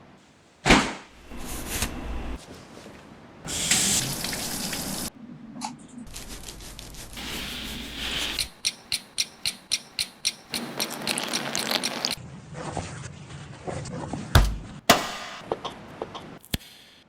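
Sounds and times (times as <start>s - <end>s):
heavy knocks with deep thud: 14.4s - 15.4s.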